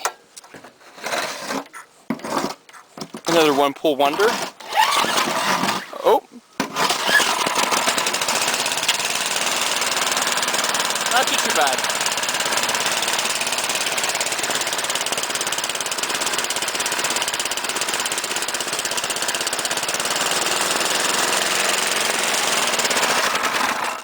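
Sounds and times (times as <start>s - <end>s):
snowblower engine idling: 7.2s - 24.0s.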